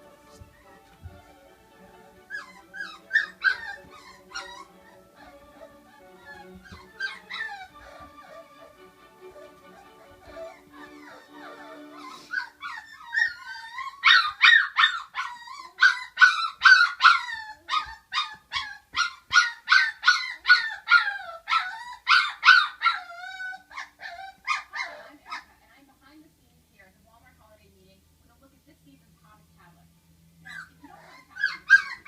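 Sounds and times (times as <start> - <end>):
puppies yelping and crying: 1.9 - 25.5, 30.5 - 32.0.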